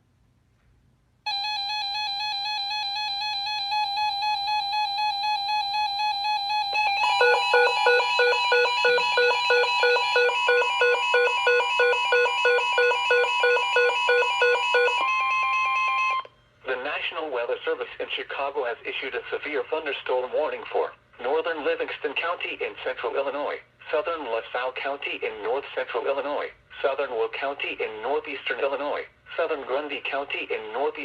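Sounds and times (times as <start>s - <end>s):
steady buzzy alert tone: 1.3s - 16.3s.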